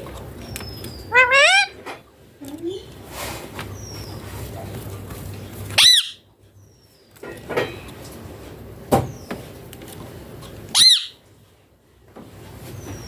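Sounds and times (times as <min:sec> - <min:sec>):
parakeet calling: 0:00.6 - 0:01.9, 0:05.8 - 0:06.3, 0:10.7 - 0:11.2.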